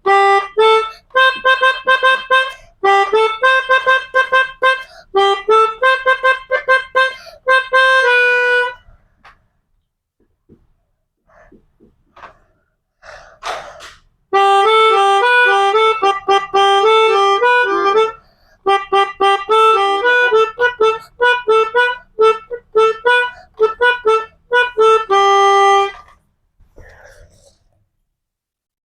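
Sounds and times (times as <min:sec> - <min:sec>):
melodica playing: 0:00.0 - 0:08.9, 0:14.3 - 0:26.2.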